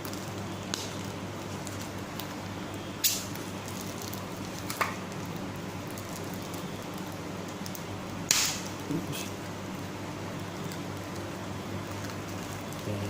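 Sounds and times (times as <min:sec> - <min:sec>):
crackling handling noises: 0:00.0 - 0:13.0
steady low hum: 0:00.0 - 0:13.0.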